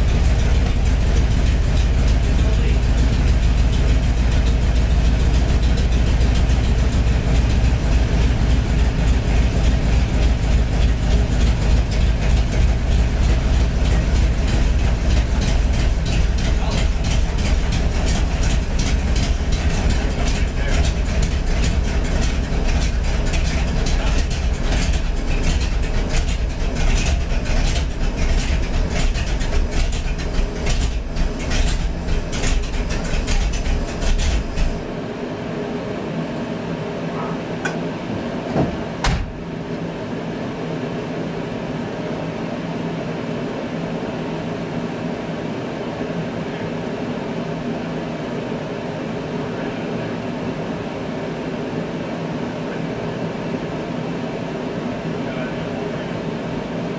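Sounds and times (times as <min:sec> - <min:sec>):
car engine deep rumble: 0:00.0 - 0:35.0
steady hum: 0:00.0 - 0:56.9.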